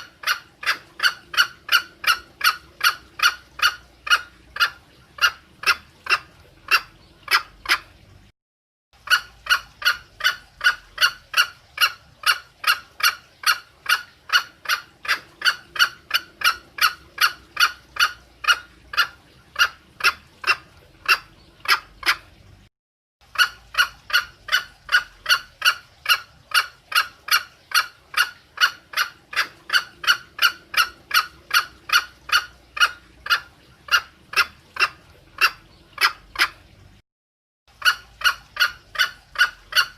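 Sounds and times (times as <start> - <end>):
junglefowl clucking calls: 0.0 - 7.9, 9.1 - 22.3, 23.4 - 36.6, 37.8 - 39.9.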